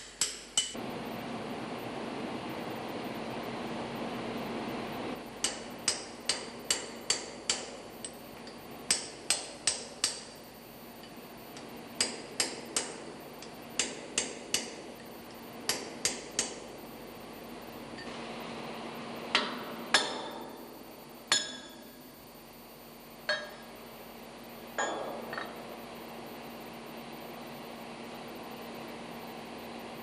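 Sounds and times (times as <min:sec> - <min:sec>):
hammer tapping on metal tool: 0:00.0 - 0:00.8, 0:05.4 - 0:10.3, 0:12.0 - 0:14.8, 0:19.4 - 0:20.4, 0:21.3 - 0:21.8, 0:23.3 - 0:23.7.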